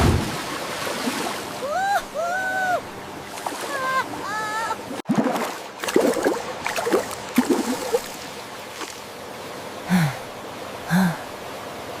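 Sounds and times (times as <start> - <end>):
low hum-like calls: 1.5 - 5.0
rushing waterfall: 7.4 - 12.0.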